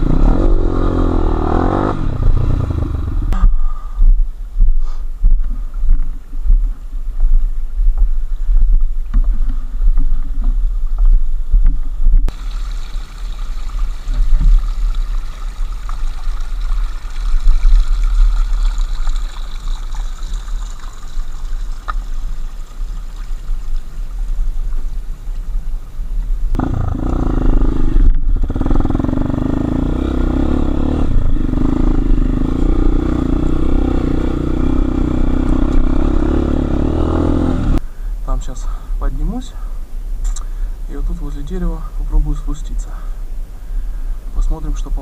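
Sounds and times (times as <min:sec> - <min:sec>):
motorcycle engine: 0:00.0 - 0:03.7, 0:26.5 - 0:37.8.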